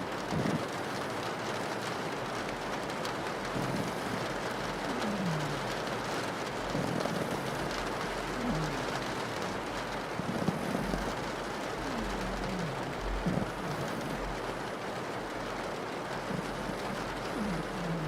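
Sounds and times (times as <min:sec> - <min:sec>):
rain pattering on a window: 0:00.0 - 0:18.0
dog snoring: 0:00.3 - 0:00.7, 0:03.5 - 0:05.8, 0:06.7 - 0:09.5, 0:10.2 - 0:14.6, 0:16.2 - 0:18.0.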